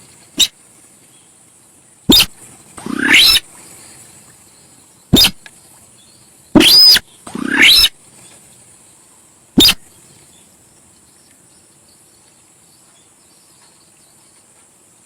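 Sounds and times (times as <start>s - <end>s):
bird calls sweeping upward: 2.1s - 3.5s, 6.6s - 8.0s
short sharp bird notes: 2.1s - 3.5s, 5.2s - 5.5s, 6.6s - 8.0s, 9.6s - 9.9s.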